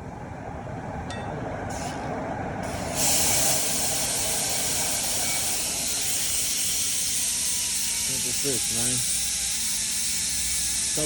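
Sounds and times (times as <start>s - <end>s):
low background rumble: 0.0s - 7.7s
loud steady hiss: 2.6s - 11.0s.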